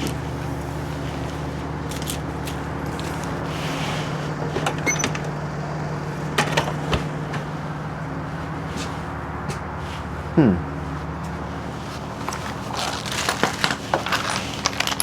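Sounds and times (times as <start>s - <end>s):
objects clicking and knocking: 12.3s - 15.0s.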